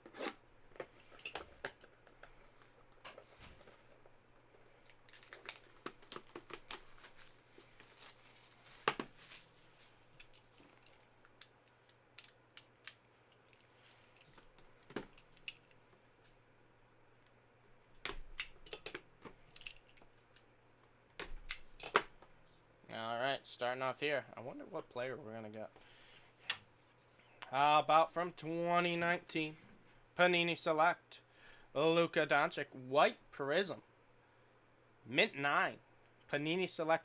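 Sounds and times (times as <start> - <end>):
small packaging clicks: 4.8 - 9.5, 10.1 - 15.8, 18.0 - 20.5
packaging crinkling: 4.8 - 12.4
packaging tearing: 5.0 - 9.6.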